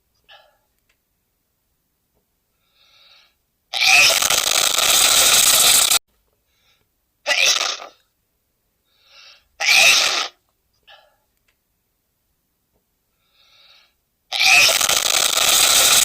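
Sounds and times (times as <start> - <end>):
short in-breaths: 2.5 - 3.4, 8.8 - 9.6, 13.1 - 14.0.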